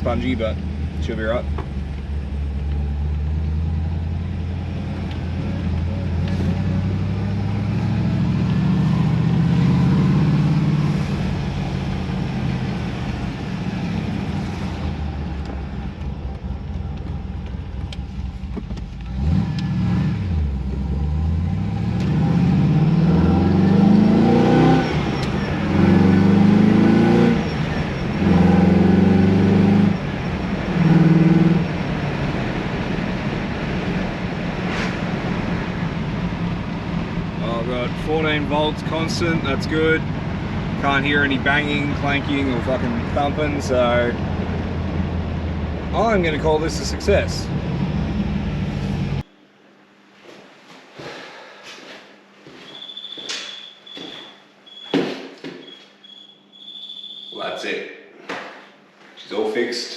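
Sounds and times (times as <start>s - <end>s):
car engine accelerating through gears: 1.7s - 37.5s, 38.3s - 49.3s.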